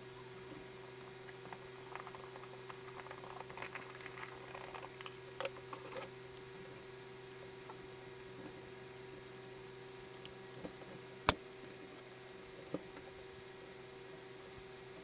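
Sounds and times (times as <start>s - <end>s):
electrical hum: 0.0s - 15.0s.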